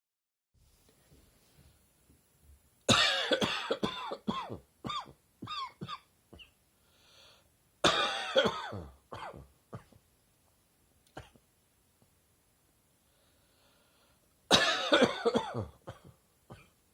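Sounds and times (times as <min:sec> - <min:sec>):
person coughing: 0:02.9 - 0:06.5, 0:07.8 - 0:10.0, 0:11.1 - 0:11.4, 0:14.5 - 0:16.8.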